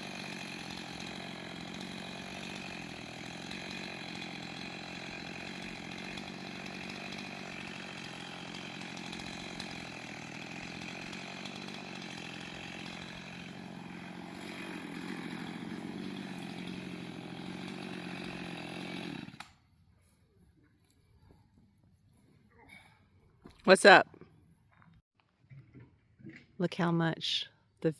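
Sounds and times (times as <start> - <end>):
chainsaw running: 0.0 - 19.6.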